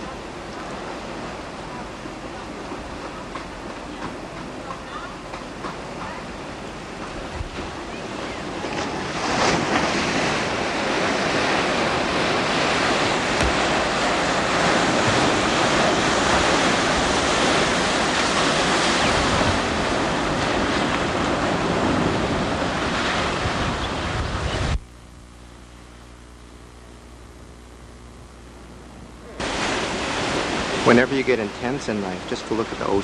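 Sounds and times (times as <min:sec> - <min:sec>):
ocean surf breaking: 0:00.0 - 0:24.8, 0:29.2 - 0:33.0
wind buffeting microphone: 0:05.6 - 0:24.8.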